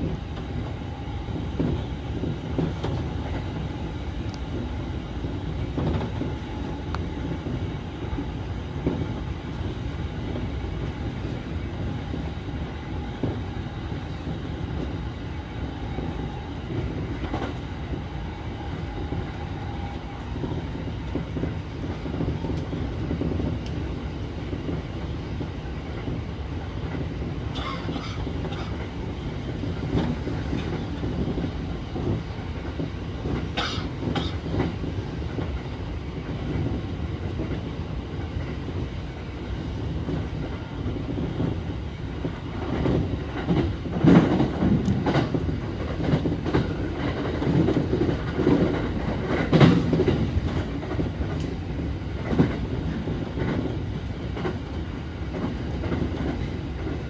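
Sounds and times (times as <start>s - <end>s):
train wheels rumbling on rail: 0.0s - 57.0s
heavy clacks over rail joints: 42.2s - 51.6s.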